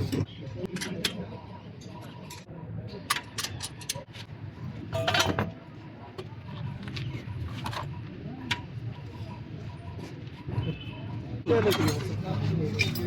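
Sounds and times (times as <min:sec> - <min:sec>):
metal tools clinking: 0:04.9 - 0:05.7, 0:11.6 - 0:13.0.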